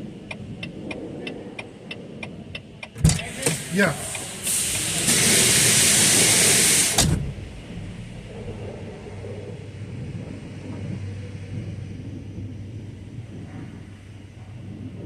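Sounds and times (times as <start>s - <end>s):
diesel engine idling: 0.0s - 15.0s
high-pressure water spray hissing: 3.1s - 7.2s.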